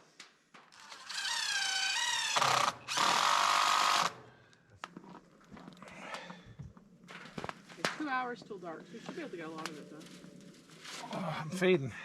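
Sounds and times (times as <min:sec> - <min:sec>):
power drill driving screw: 0:00.7 - 0:04.2.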